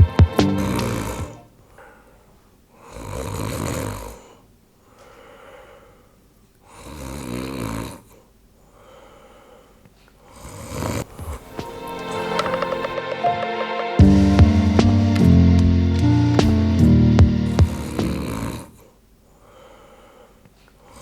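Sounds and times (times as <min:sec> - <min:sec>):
person snoring: 0:00.4 - 0:01.5, 0:02.8 - 0:04.4, 0:06.7 - 0:08.2, 0:10.3 - 0:12.9, 0:17.4 - 0:19.0
soft breath out: 0:04.1 - 0:07.0, 0:08.1 - 0:11.8, 0:17.7 - 0:21.0.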